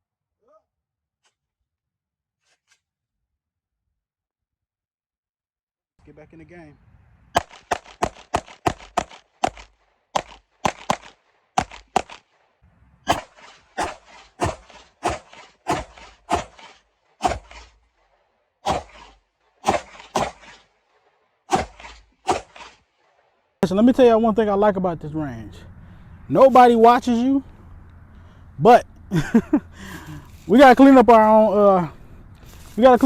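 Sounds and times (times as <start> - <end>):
pistol firing: 7.4 - 12.4, 13.0 - 17.7, 18.7 - 20.6, 21.5 - 22.8.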